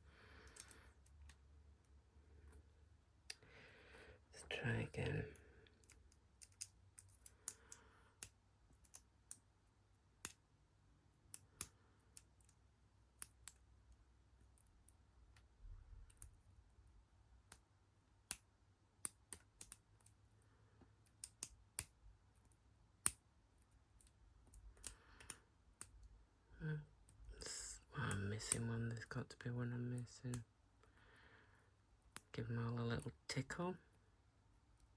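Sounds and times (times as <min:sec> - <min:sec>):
lock picking clicks: 0:00.4 - 0:01.4, 0:05.8 - 0:09.4.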